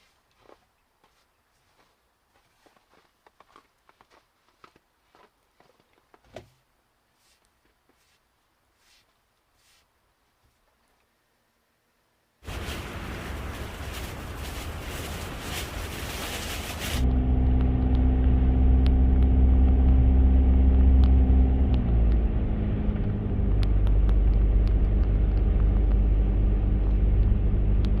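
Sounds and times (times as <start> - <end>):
loud hiss-like noise: 12.4 - 17.0
vehicle engine humming: 12.4 - 28.0.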